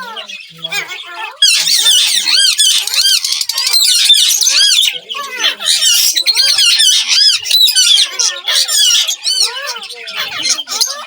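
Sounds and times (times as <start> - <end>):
parakeets screeching: 0.0 - 11.0.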